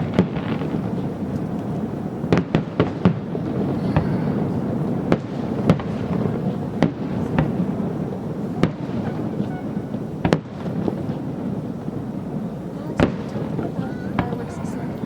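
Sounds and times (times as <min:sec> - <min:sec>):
firework shells bursting: 0:00.0 - 0:15.0
low rumble of explosions: 0:00.0 - 0:15.0.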